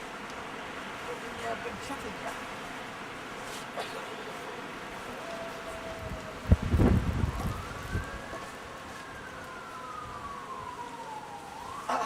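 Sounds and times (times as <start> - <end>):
distant siren wailing: 4.4 - 12.0.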